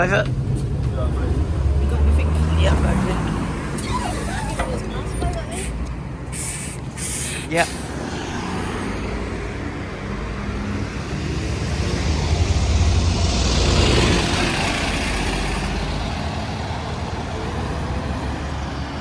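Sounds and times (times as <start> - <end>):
bus engine running: 0.0 - 19.0.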